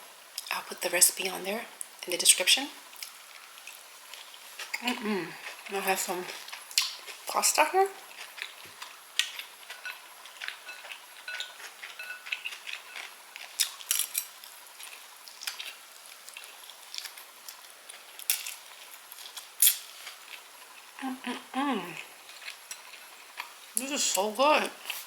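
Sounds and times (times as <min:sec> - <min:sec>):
cutlery clinking against a plate: 0:09.7 - 0:13.1.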